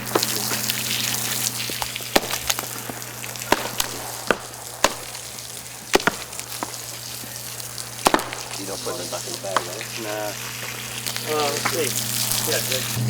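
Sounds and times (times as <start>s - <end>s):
low hum: 0.0s - 13.0s.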